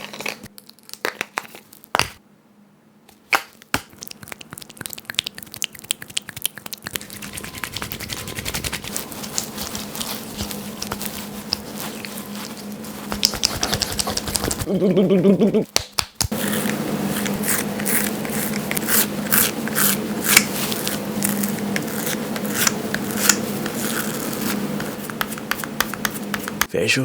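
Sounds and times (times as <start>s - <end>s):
razor crackling through stubble: 3.8s - 14.7s, 16.2s - 26.3s.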